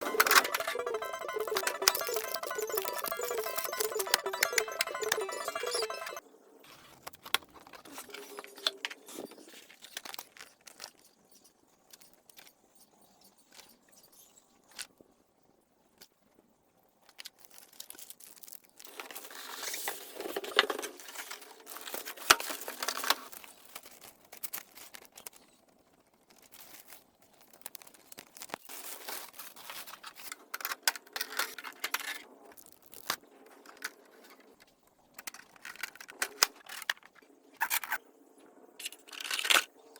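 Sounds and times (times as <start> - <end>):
cardboard and plastic wrap crinkling: 17.2 - 30.4.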